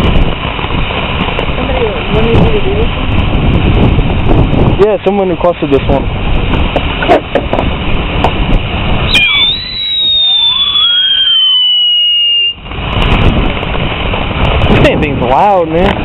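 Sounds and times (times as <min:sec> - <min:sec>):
firework hissing and crackling: 0:00.0 - 0:16.0
shrill descending whistle: 0:09.1 - 0:12.6.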